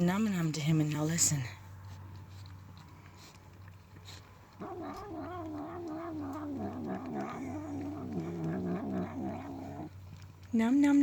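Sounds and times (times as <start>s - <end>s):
cat murmuring wavering vocal: 4.6s - 9.9s.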